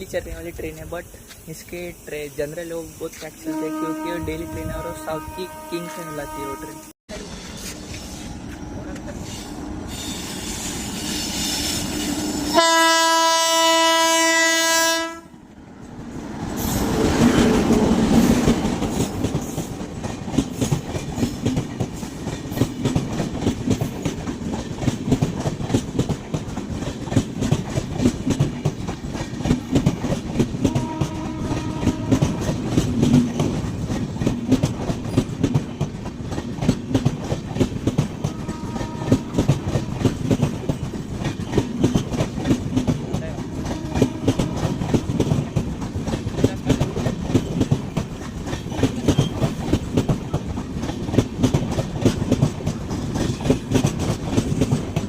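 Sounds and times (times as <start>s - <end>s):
train horn: 3.5s - 6.9s, 12.5s - 15.3s, 30.6s - 32.8s, 38.2s - 40.1s, 43.4s - 45.4s
train wheels clattering over rails: 15.9s - 55.0s.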